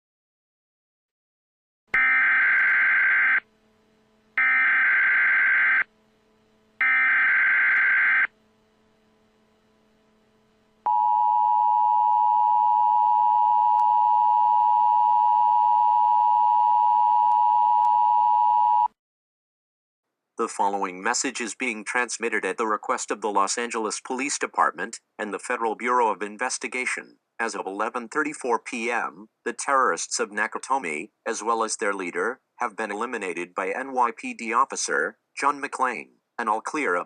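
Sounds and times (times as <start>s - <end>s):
two-tone attention signal: 10.9s - 18.9s.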